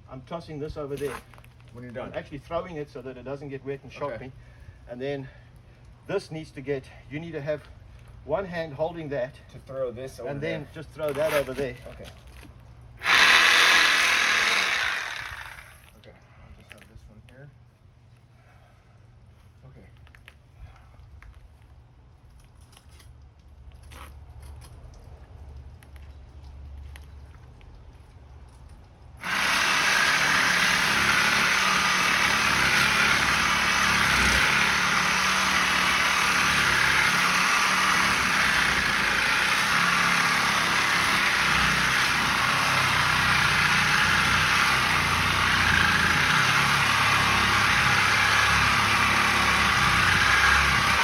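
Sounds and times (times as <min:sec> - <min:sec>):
power tool cutting steel pipe: 0:13.0 - 0:15.8, 0:29.2 - 0:51.0.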